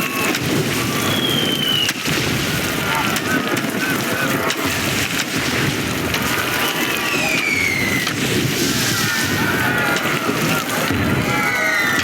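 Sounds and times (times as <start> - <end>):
heavy rain and wind: 0.0 - 12.0
falling whistle-like glide: 0.8 - 1.9, 6.5 - 8.1.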